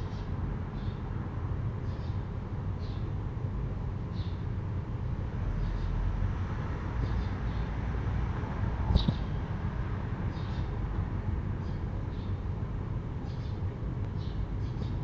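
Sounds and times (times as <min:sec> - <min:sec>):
low background rumble: 0:00.0 - 0:15.0.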